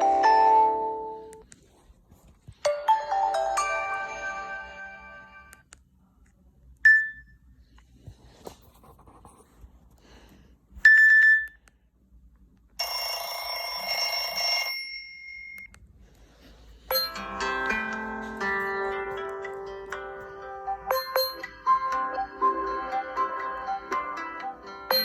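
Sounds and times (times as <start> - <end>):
melodic phone ringtone: 0.0 - 1.4, 2.6 - 5.6, 12.8 - 15.6, 16.9 - 25.0.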